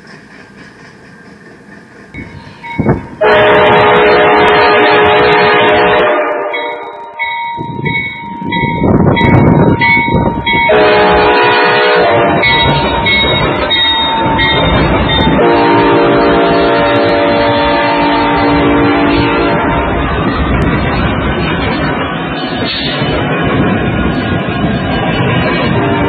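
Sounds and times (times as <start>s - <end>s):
train rushing past: 0.0s - 26.0s
locomotive horn blasts: 3.2s - 7.2s, 10.6s - 13.0s, 14.1s - 19.9s.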